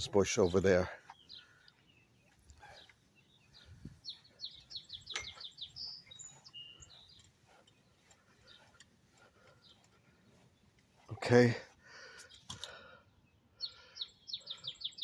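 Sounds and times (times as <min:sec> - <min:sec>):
small songbird singing: 0:00.0 - 0:15.0.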